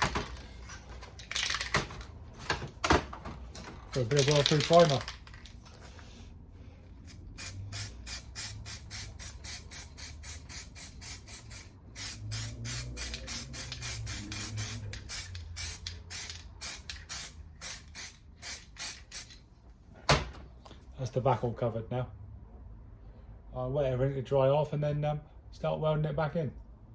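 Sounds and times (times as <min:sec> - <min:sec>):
aerosol can spraying: 0:07.1 - 0:19.3.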